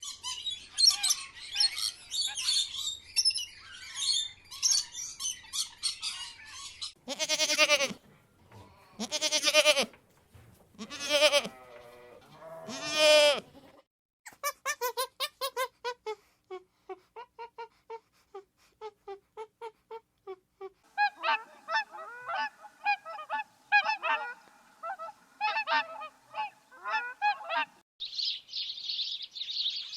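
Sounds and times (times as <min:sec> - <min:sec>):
small birds chirping: 0:00.0 - 0:07.0, 0:28.0 - 0:29.9
farm animal bleating: 0:07.0 - 0:10.0, 0:10.8 - 0:13.6.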